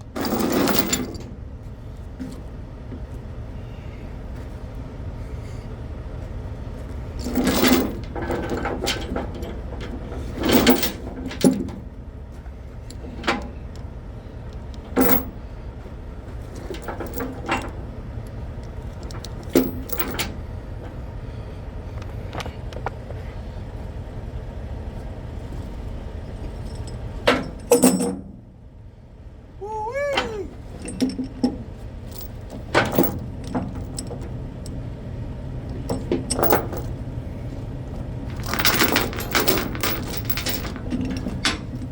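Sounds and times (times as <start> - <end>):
low engine rumble: 0.0 - 41.9
metallic clanks and rattles: 0.1 - 1.4, 7.1 - 13.8, 14.8 - 15.5, 16.2 - 18.0, 18.8 - 21.0, 26.6 - 28.4, 30.2 - 41.9.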